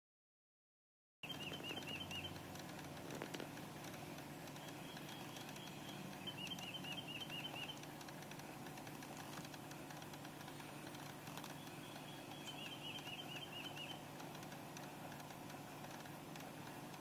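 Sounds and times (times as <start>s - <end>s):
faint clicking: 1.2s - 17.0s
steady low hum: 1.2s - 17.0s
high chirps: 4.5s - 7.9s, 10.5s - 14.1s.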